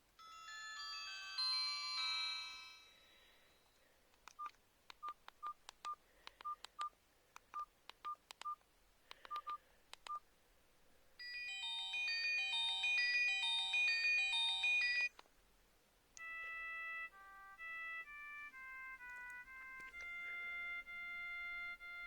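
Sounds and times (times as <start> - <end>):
polyphonic ringtone melody: 0.2 - 3.4, 11.2 - 15.1, 16.2 - 22.0
keypad beeps with button clicks: 4.3 - 6.9, 7.6 - 8.6, 9.2 - 10.2.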